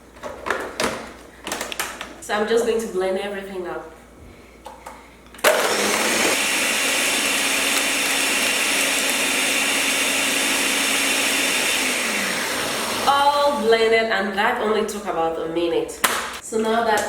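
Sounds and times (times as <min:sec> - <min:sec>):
blender running: 0:05.4 - 0:13.6.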